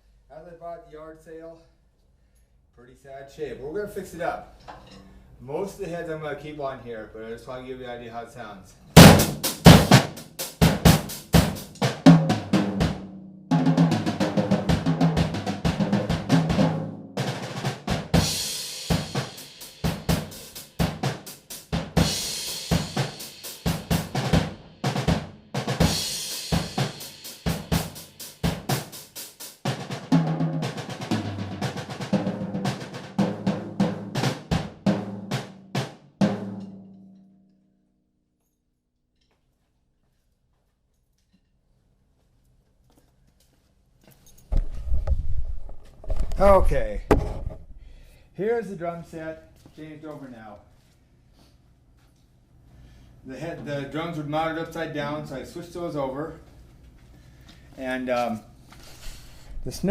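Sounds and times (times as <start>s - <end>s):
drum kit groove: 8.9s - 36.9s
drum ringing: 9.0s - 28.8s
cymbal crashes: 25.8s - 29.0s.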